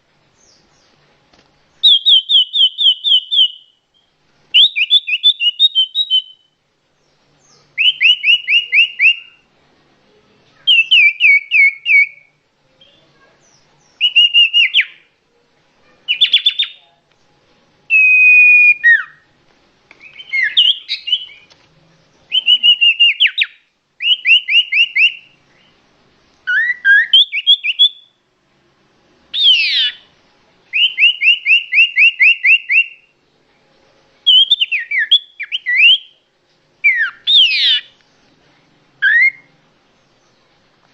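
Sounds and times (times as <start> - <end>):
songbird singing: 0.0 - 28.3, 29.3 - 40.9.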